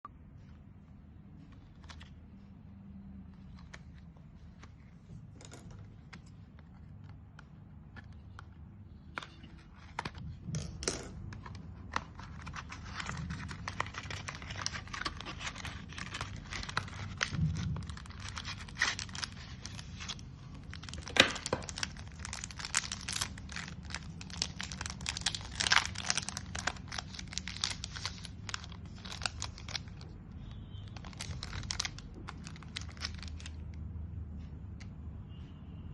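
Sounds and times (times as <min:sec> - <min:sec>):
plastic wrapper crinkling and tearing: 0:11.4 - 0:33.8.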